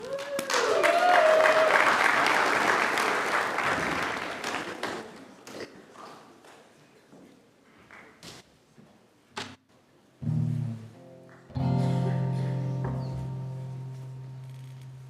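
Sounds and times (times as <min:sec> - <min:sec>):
instrument chords ringing: 0:10.3 - 0:15.0.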